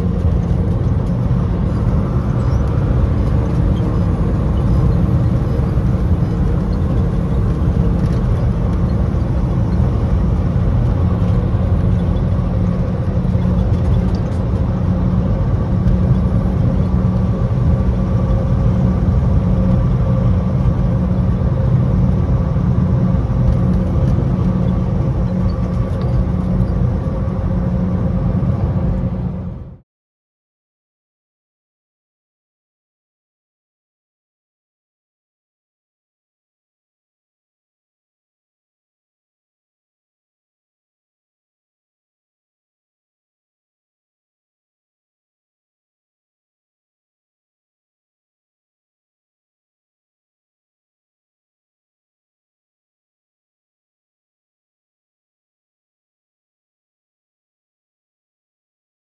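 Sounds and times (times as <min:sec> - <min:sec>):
truck engine and road noise: 0:00.0 - 0:29.8.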